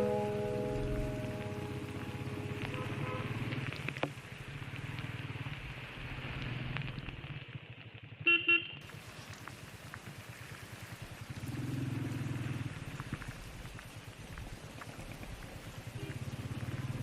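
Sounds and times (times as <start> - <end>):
motorcycle engine running: 0.0 - 8.8, 10.2 - 13.5, 14.9 - 17.0
vehicle horn blasts: 2.2 - 3.5, 8.3 - 8.8.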